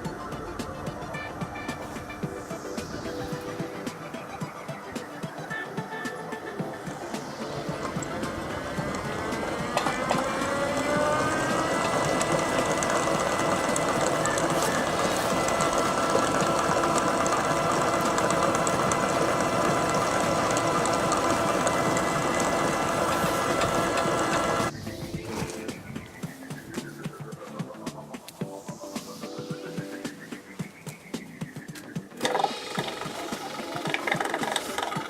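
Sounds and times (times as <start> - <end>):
mixer motor whine: 0.0 - 25.8, 32.2 - 35.0.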